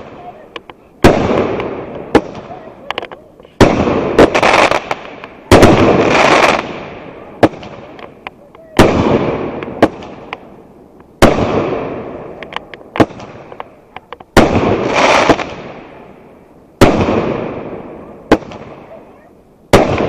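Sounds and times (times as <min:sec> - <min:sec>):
firework cracks and pops: 0:00.0 - 0:16.2, 0:16.8 - 0:20.0
firework booms: 0:00.0 - 0:20.0
firework crackling: 0:00.0 - 0:20.0.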